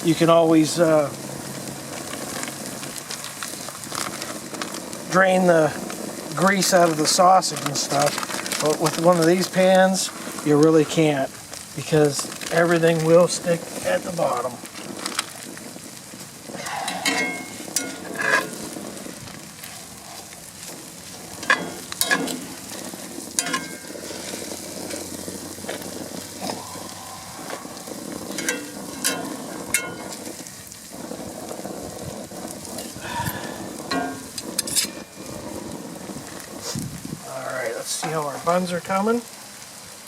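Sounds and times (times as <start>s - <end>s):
sausage and cheese sizzling: 0.0s - 40.0s
utensil scraping a pan: 16.5s - 19.0s, 25.7s - 30.4s, 33.8s - 35.4s.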